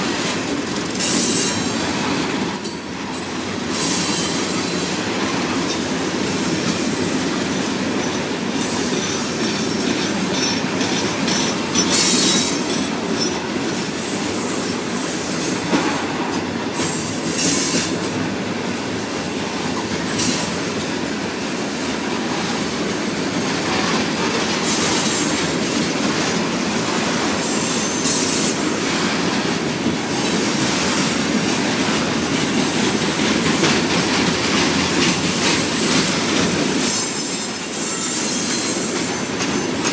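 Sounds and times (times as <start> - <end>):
high-pitched wheel squeals: 0.0 - 18.4, 35.4 - 39.8
freight train cars rumbling: 0.0 - 39.9
wheels clicking over rail joints: 7.2 - 14.0, 28.8 - 39.9.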